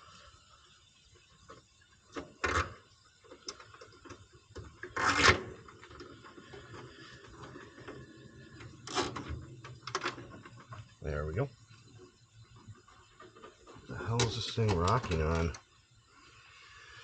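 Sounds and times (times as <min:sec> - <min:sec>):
small clicks from wiring work: 0:14.2 - 0:15.6.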